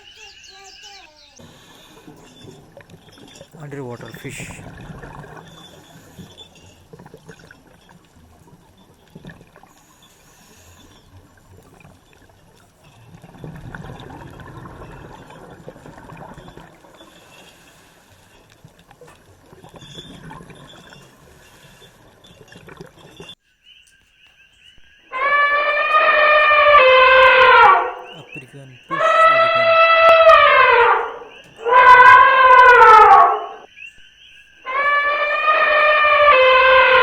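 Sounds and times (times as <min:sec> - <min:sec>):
water trickling and splashing: 0:00.0 - 0:23.4.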